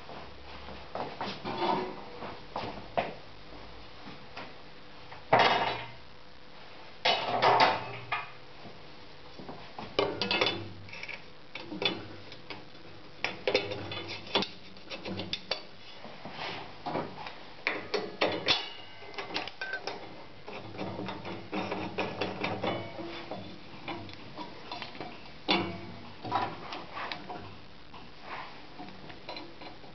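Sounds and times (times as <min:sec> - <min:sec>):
grinder mechanical clicks and knocks: 0:17.7 - 0:26.6.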